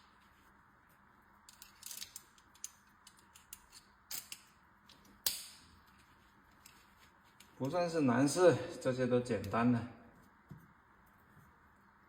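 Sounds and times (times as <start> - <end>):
metal parts clicking and clinking: 1.5 - 6.8.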